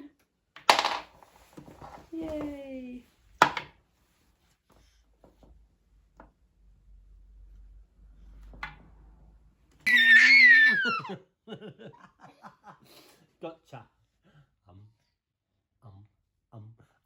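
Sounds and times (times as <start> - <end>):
high-pitched falling squeal: 9.9 - 11.1.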